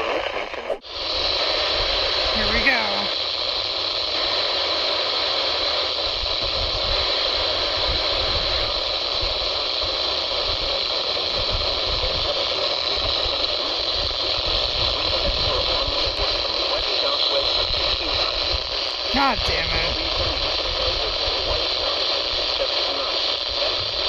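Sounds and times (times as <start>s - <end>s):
radio static hiss: 0.0s - 24.0s.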